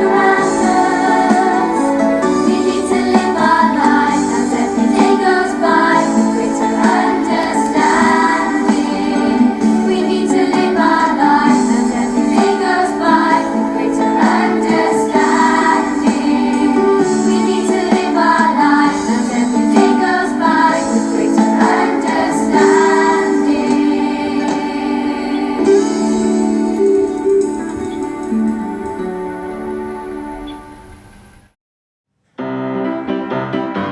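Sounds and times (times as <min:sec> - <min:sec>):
background music with singing: 0:00.0 - 0:30.5.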